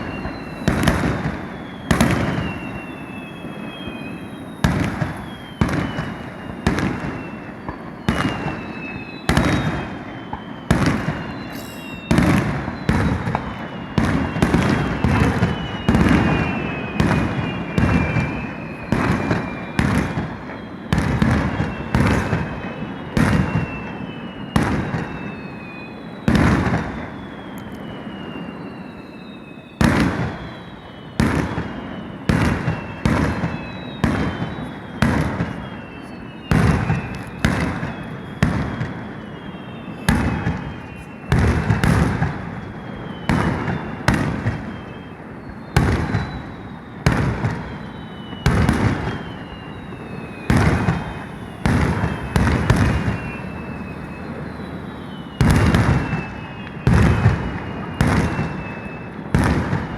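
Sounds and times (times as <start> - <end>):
firework shells bursting: 0.0 - 16.4
falling firework whistles: 0.0 - 59.9.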